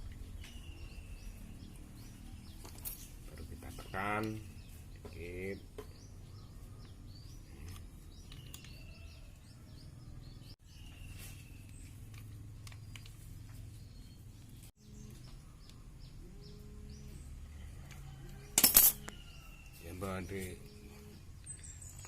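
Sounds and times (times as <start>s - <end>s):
small birds chirping: 0.0s - 22.0s
long steady bird whistles: 0.2s - 3.0s.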